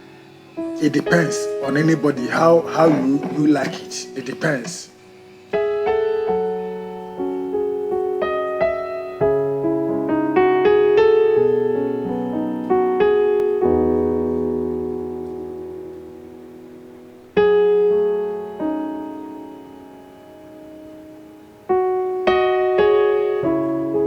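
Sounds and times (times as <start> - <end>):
slow piano music: 0.0 - 24.0.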